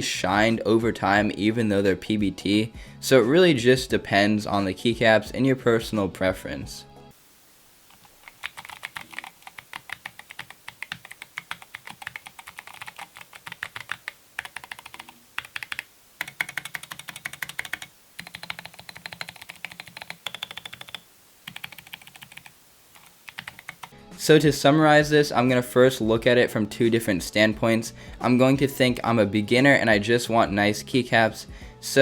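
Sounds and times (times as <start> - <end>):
mechanical keyboard typing: 7.9 - 23.9.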